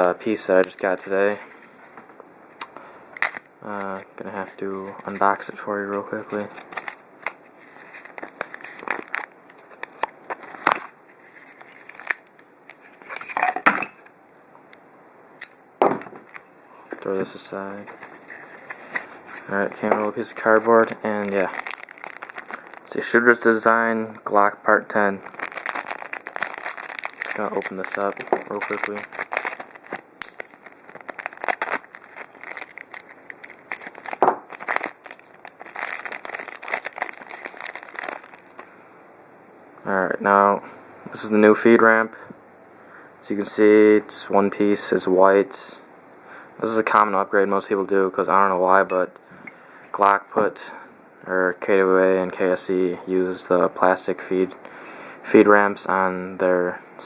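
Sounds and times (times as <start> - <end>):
package crinkling and tearing: 3.2 - 3.9, 6.3 - 13.4, 17.9 - 23.0, 25.2 - 38.7.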